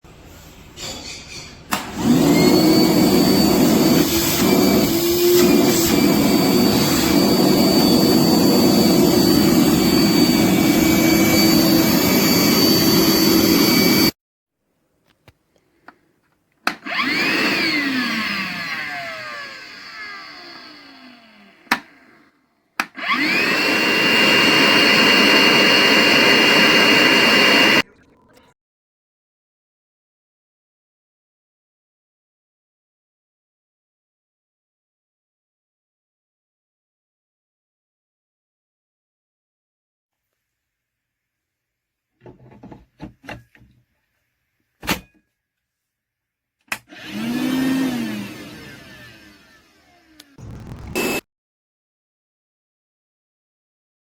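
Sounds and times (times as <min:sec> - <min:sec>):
vacuum motor whining: 0:01.8 - 0:14.1, 0:16.8 - 0:22.3, 0:23.0 - 0:27.8, 0:46.9 - 0:51.2.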